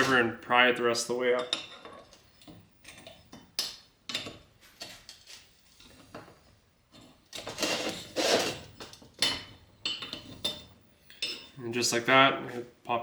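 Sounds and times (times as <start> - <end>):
screwdriver scraping steel: 7.4 - 8.7.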